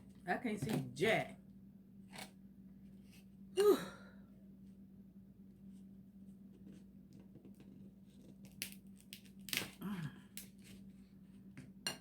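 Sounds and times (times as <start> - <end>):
steady low hum: 0.0 - 12.0
crab shell cracking: 8.5 - 10.5.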